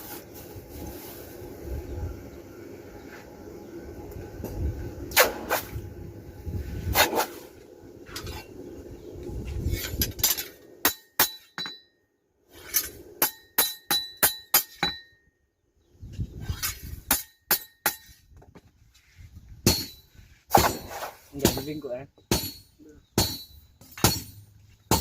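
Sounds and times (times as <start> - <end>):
low rumbling: 0.6 - 10.9
hammer striking steel blade: 10.8 - 11.9, 12.7 - 15.2, 20.6 - 25.0.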